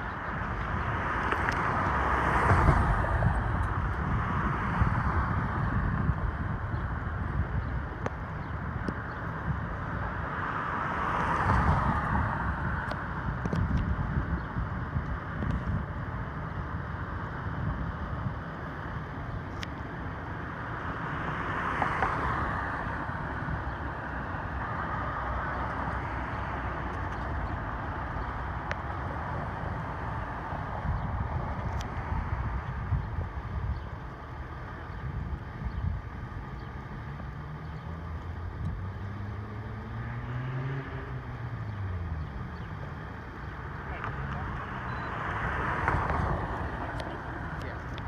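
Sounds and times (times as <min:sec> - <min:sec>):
wind buffeting microphone: 0:00.0 - 0:19.6, 0:22.2 - 0:39.3
street traffic rumble: 0:00.0 - 0:48.0.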